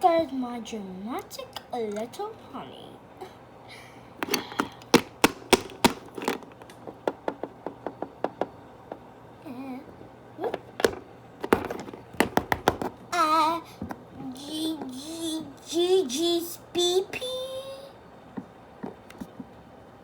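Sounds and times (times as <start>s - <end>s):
plastic figures clicking on hard surface: 4.2s - 9.1s, 10.4s - 13.1s.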